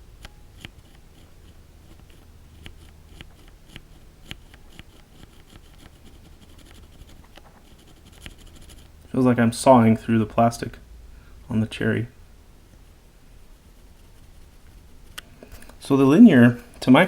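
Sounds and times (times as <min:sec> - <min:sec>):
scratchy rub of key stem: 0:00.3 - 0:09.0, 0:13.6 - 0:15.9.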